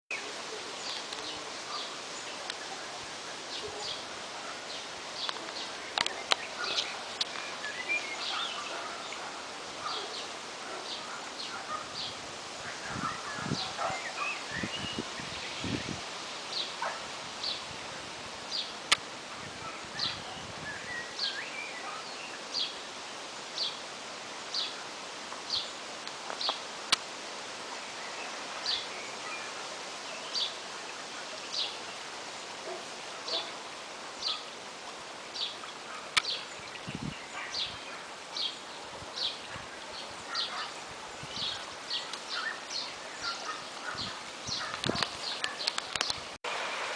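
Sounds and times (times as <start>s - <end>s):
steady background hiss: 0.1s - 46.9s
other birds chirping: 0.8s - 15.9s, 28.0s - 34.6s, 35.2s - 46.4s.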